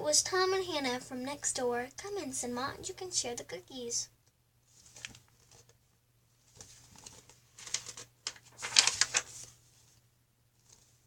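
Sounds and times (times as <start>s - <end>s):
book pages rustling: 4.7s - 5.8s, 6.4s - 11.0s.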